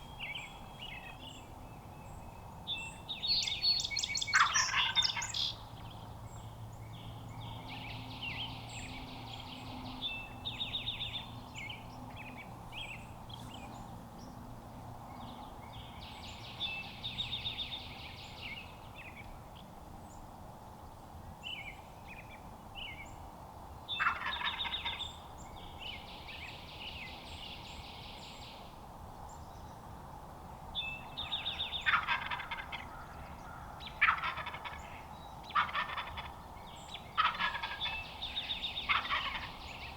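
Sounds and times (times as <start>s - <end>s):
soft high turkey calls: 4.2s - 5.6s, 24.0s - 25.0s, 31.3s - 39.9s
turkey gobbling: 4.3s - 5.5s, 24.0s - 25.0s, 31.8s - 32.9s, 34.0s - 36.4s, 37.2s - 38.0s, 38.9s - 39.6s.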